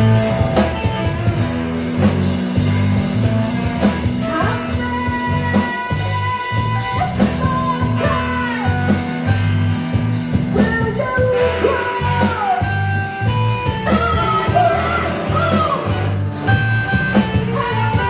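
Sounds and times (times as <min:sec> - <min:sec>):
rock music: 0:00.0 - 0:18.0
person singing: 0:04.0 - 0:09.4, 0:10.6 - 0:18.0.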